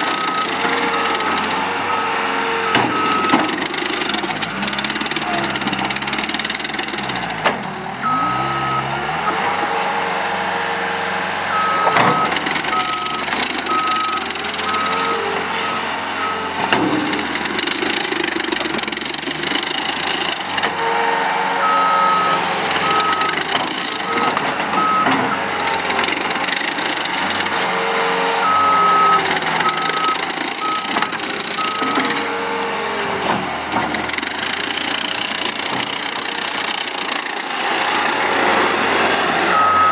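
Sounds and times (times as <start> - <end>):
backup alarm beeping: 0.0 - 7.1, 8.0 - 9.4, 11.5 - 18.0, 21.6 - 26.0, 28.4 - 32.2, 39.5 - 39.9
diesel engine running under load: 0.0 - 39.9.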